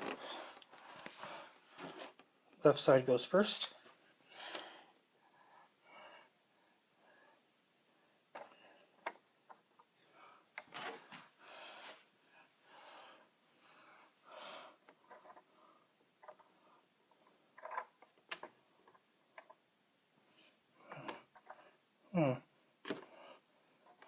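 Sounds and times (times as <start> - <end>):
plastic parts clicking and rustling: 17.5 - 19.6, 22.8 - 23.2.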